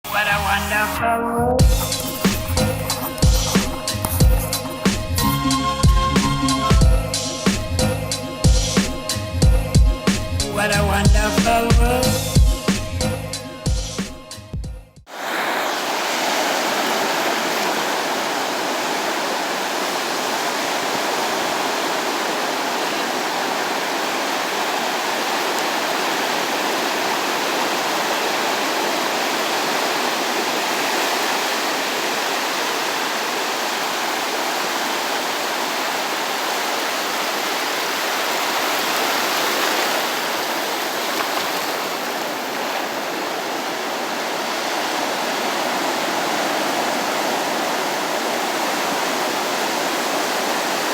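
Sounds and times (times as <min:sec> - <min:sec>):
waves breaking on beach: 0:15.1 - 0:50.9.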